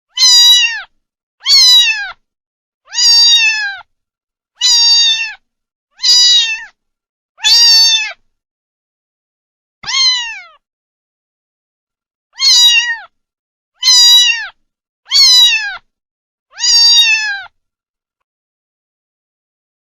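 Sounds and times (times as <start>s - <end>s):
kitten meowing: 0.1s - 2.2s, 2.9s - 3.9s, 4.6s - 5.4s, 6.0s - 6.8s, 7.4s - 8.2s, 9.8s - 10.6s, 12.4s - 13.1s, 13.8s - 15.9s, 16.5s - 17.6s.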